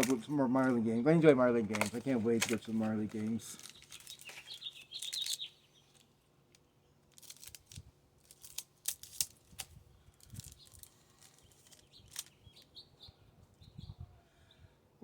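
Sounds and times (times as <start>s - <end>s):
cards snapping and rustling: 0.0s - 0.8s, 1.7s - 6.1s, 7.1s - 12.4s
bird chirps: 3.6s - 6.0s, 10.6s - 14.6s.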